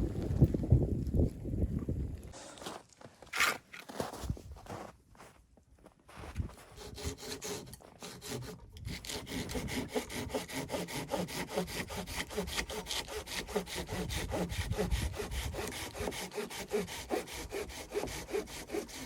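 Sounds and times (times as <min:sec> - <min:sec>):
hand saw cutting wood: 0:03.3 - 0:03.6, 0:06.7 - 0:19.0.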